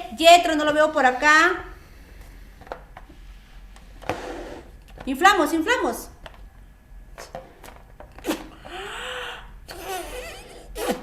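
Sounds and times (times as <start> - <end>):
blowing air into balloon: 8.2 - 11.0
person breathing in sharply: 8.4 - 9.6.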